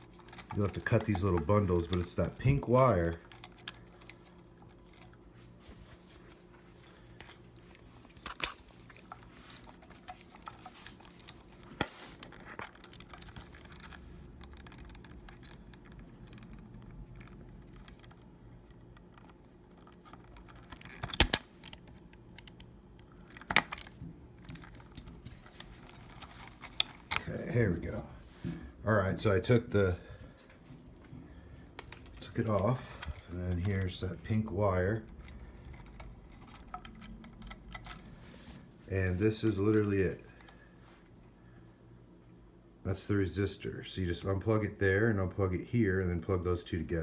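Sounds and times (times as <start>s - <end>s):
cutters snipping cable ties: 0.0s - 5.2s
handling noise: 0.0s - 41.2s
faint steady hum: 0.0s - 47.0s.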